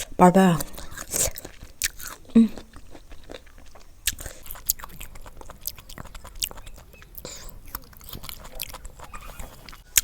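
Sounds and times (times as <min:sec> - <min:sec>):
wet mouth chewing sounds: 0:00.0 - 0:10.0
person humming: 0:02.3 - 0:02.7.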